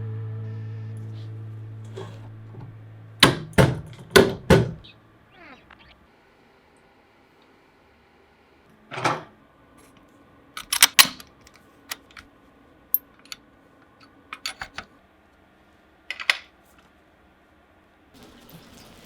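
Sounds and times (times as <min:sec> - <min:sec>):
dull knock: 0:03.2 - 0:04.8.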